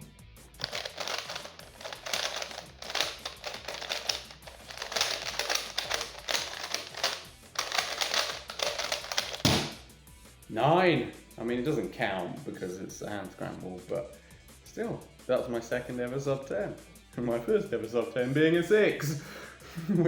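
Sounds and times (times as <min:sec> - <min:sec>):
puzzle cube clicking: 0:00.6 - 0:09.8.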